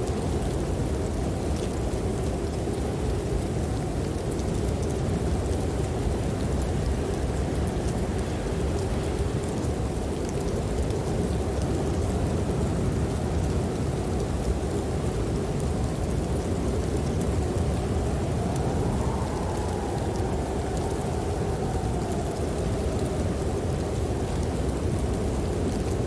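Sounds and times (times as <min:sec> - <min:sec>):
wind howling: 0:12.3 - 0:26.0
fireplace crackles: 0:16.6 - 0:24.9.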